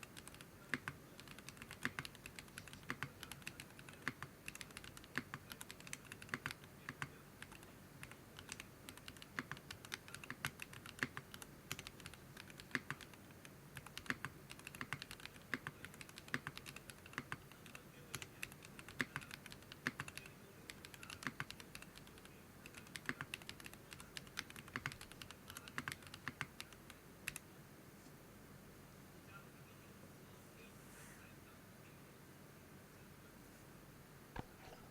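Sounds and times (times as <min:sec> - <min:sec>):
typing on mechanical keyboard: 0:00.0 - 0:13.2, 0:13.8 - 0:27.4.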